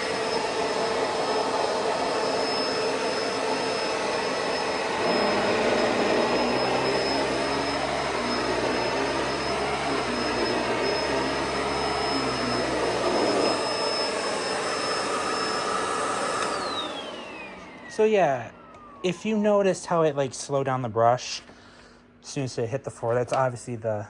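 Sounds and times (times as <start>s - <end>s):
upright vacuum cleaner running: 0.0s - 20.0s
vacuum brush roll rumble: 0.1s - 17.9s.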